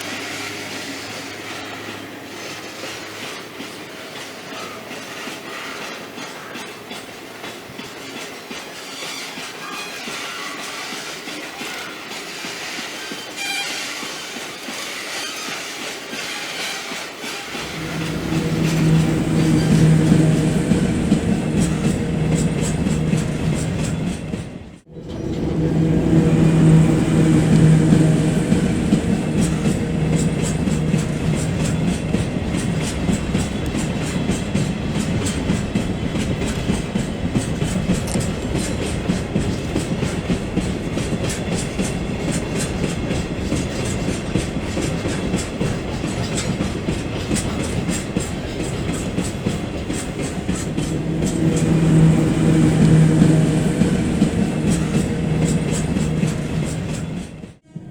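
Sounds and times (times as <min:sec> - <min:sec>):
wheels clicking over rail joints: 0:20.9 - 0:57.6.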